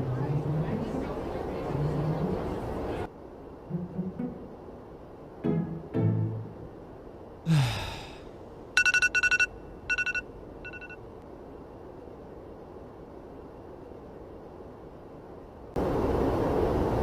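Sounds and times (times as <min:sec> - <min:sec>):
person sighing: 0:07.5 - 0:08.3
short vocal sounds: 0:07.5 - 0:08.3
electronic beeps: 0:08.8 - 0:11.0.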